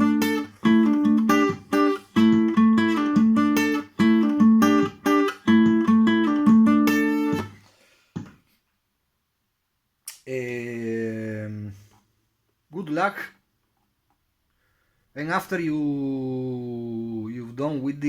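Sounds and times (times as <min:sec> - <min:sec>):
guitar riff of plucked notes: 0:00.0 - 0:07.6
man speaking: 0:10.1 - 0:11.9, 0:12.7 - 0:13.4, 0:15.2 - 0:18.0.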